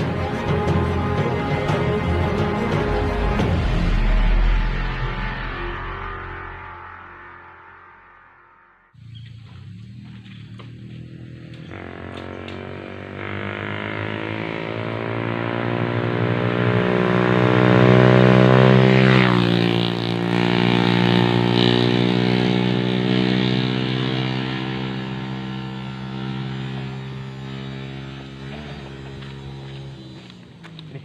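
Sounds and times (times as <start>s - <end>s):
vehicle engine running under load: 9.0s - 31.0s.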